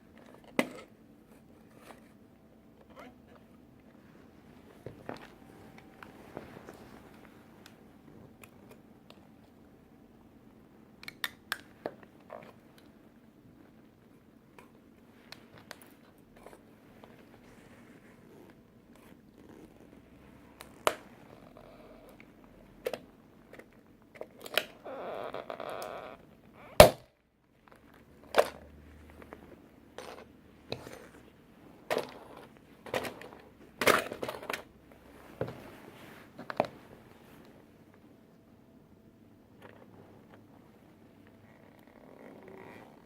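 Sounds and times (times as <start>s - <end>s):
plastic toy cracking under boots: 26.8s - 27.1s.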